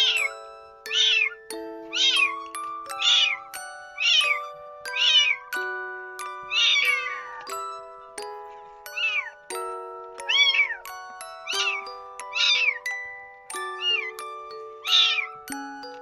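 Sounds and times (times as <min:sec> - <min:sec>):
kitten meowing: 0:00.0 - 0:03.4, 0:04.0 - 0:05.5, 0:06.5 - 0:07.5, 0:08.9 - 0:09.3, 0:10.2 - 0:10.8, 0:11.5 - 0:12.8, 0:13.8 - 0:14.2, 0:14.8 - 0:15.4.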